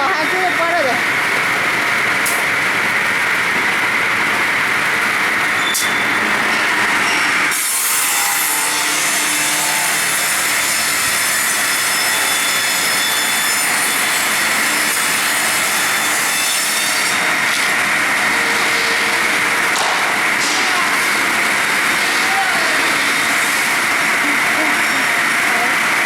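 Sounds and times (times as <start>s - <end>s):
circular saw cutting log: 5.4s - 26.0s.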